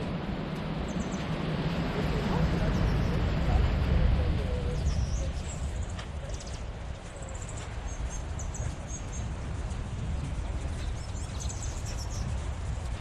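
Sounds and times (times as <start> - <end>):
low outdoor rumble: 0.0 - 13.0
small birds chirping: 0.8 - 1.4, 2.4 - 3.3, 4.4 - 13.0.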